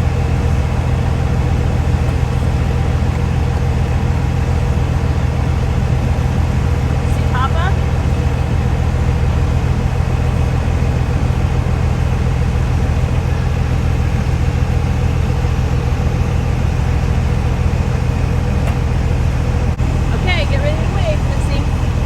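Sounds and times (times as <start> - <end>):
vehicle engine droning: 0.0 - 22.0.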